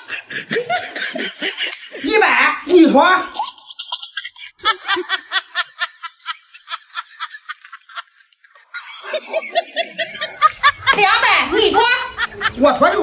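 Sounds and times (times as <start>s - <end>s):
person laughing: 0.0s - 2.1s, 3.3s - 8.0s.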